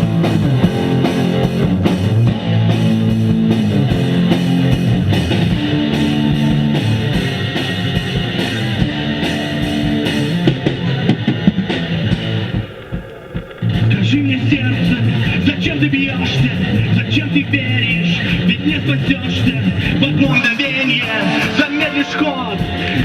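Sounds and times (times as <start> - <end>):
instrumental rock with guitars and drums: 0.0 - 23.0.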